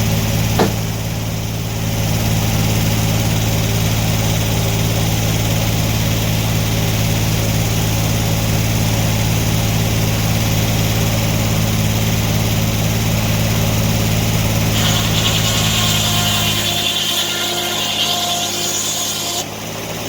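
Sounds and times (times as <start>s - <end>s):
sawmill engine running: 0.0s - 20.0s
saw cutting into wood: 14.6s - 19.6s.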